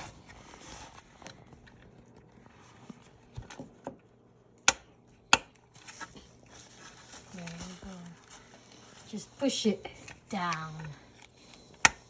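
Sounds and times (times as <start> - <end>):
handling rustle: 5.7 - 10.7.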